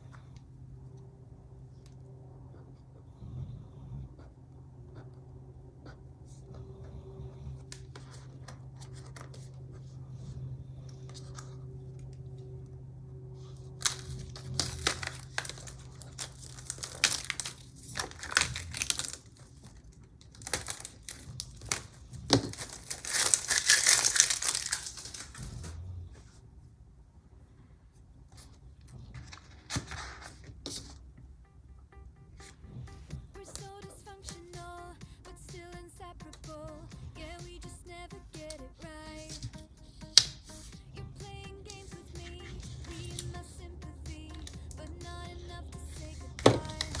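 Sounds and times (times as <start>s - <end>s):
faint low hum: 0.0s - 47.0s
sticker paper rustling and peeling: 7.6s - 12.2s, 13.4s - 25.7s, 38.4s - 40.8s, 41.6s - 43.4s, 45.8s - 47.0s.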